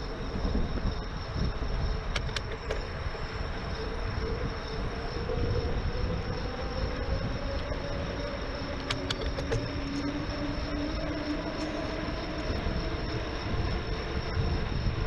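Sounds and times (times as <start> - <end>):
faint electric motor whine: 0.0 - 15.0
wind and road rumble: 0.0 - 15.0
sharp clicks: 2.1 - 2.8, 8.8 - 9.8.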